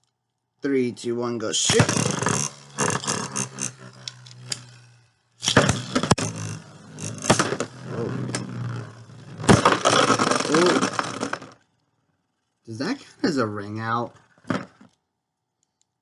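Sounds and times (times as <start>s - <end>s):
tops scraping: 1.0s - 11.6s
spinning tops whirring: 1.0s - 15.0s
plastic tops clacking together: 9.5s - 11.6s.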